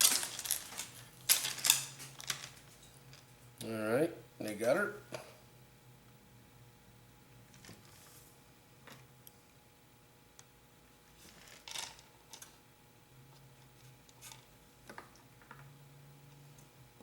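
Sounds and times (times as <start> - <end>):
small metal chain parts clicking: 0.0 - 2.6.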